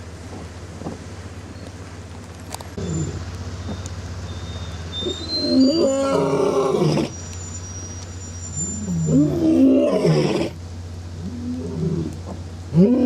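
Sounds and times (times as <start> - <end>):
steady low hum: 0.0 - 13.0
lion roaring: 5.4 - 7.1, 8.8 - 10.6, 11.2 - 13.0.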